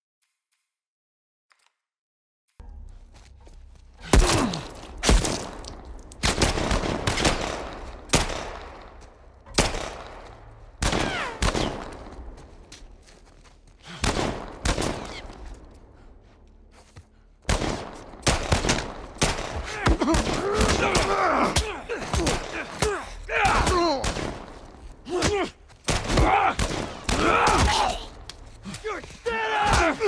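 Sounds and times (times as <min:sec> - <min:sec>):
video game gunshots echoing: 0:04.0 - 0:13.2, 0:13.8 - 0:15.9, 0:17.4 - 0:30.0.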